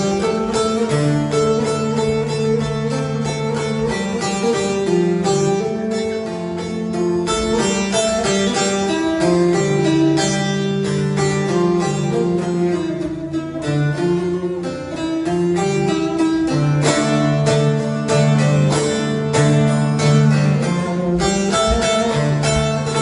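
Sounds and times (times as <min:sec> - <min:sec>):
held bowed-string notes: 0:00.0 - 0:23.0
plucked string melody: 0:00.0 - 0:23.0.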